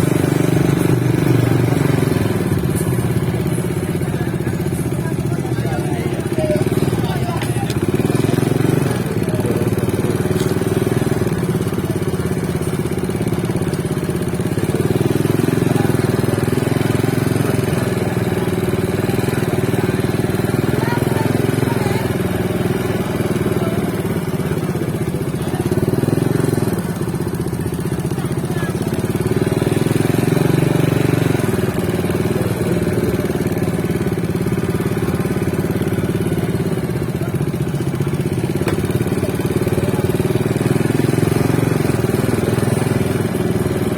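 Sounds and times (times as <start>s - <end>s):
faint voices: 0.0s - 43.9s
motorcycle engines passing: 0.0s - 43.9s.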